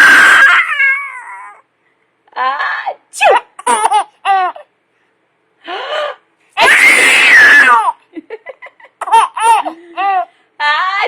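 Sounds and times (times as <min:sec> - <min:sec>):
baby giggling: 0:03.6 - 0:04.6, 0:08.6 - 0:10.3.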